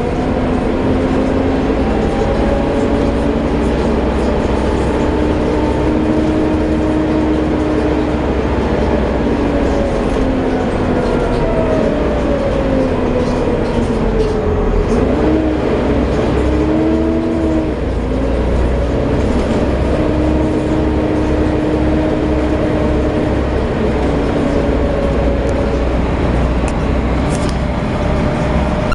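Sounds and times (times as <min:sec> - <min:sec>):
bus diesel engine droning: 0:00.0 - 0:28.9.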